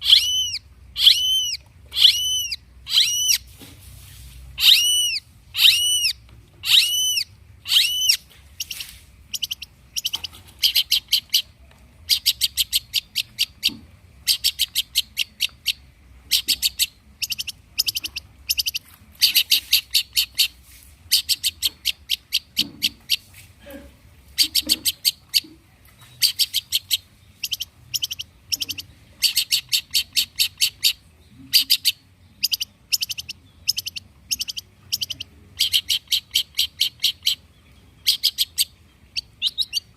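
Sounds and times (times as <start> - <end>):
bird chattering rapid high notes: 0.0 - 3.4
shrike harsh calls: 0.0 - 3.5, 4.6 - 8.2.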